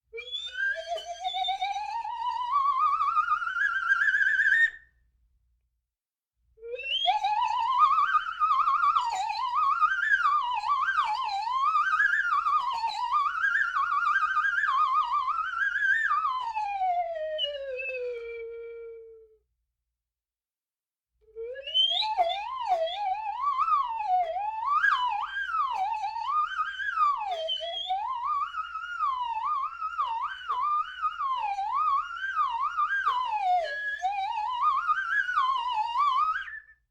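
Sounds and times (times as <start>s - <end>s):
slide whistle with vibrato: 0.1s - 4.9s, 6.6s - 19.4s, 21.3s - 36.9s.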